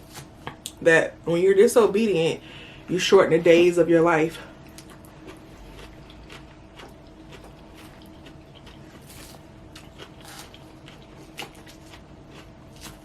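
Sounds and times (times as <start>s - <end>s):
person chewing salad: 4.5s - 13.0s.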